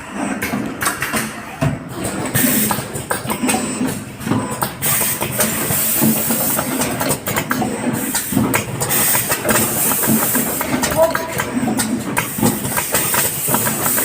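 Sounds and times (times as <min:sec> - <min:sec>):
machine hissing: 0:04.8 - 0:14.0
short machine clicks: 0:09.0 - 0:14.0.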